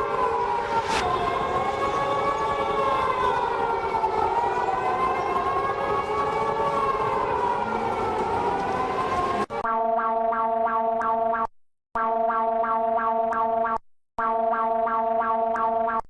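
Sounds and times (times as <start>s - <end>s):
alert siren wailing: 0.0s - 10.8s
hiss of noise: 0.7s - 1.2s.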